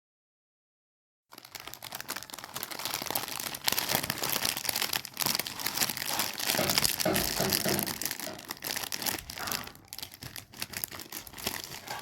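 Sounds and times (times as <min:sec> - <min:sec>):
chip bag crinkling: 0:01.3 - 0:12.0.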